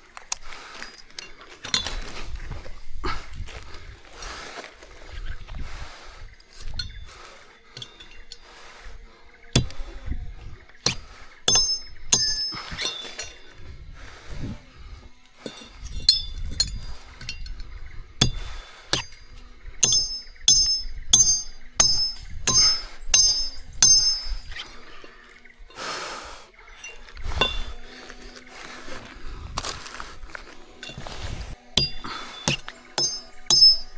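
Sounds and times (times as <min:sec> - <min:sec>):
sharp ringing clinks and knocks: 0:00.3 - 0:02.2, 0:06.4 - 0:08.7, 0:09.6 - 0:13.6, 0:15.3 - 0:25.1, 0:26.7 - 0:28.4, 0:30.8 - 0:33.9.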